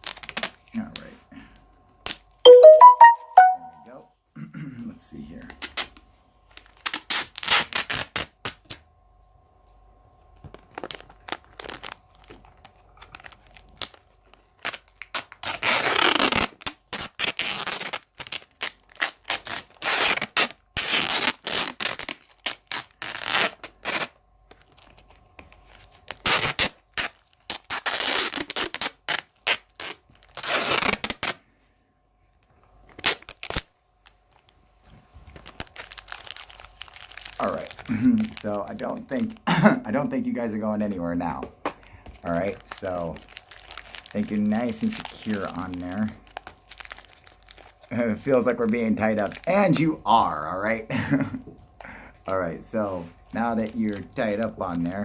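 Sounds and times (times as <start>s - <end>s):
adhesive tape ripping off roll: 0.0s - 0.7s, 5.6s - 8.8s, 10.5s - 31.4s, 32.9s - 34.6s, 35.3s - 39.4s, 42.5s - 47.9s
tape scratching and rubbing: 6.6s - 8.8s, 10.8s - 14.0s, 14.6s - 24.1s, 24.8s - 31.4s, 32.9s - 34.5s, 35.3s - 37.9s.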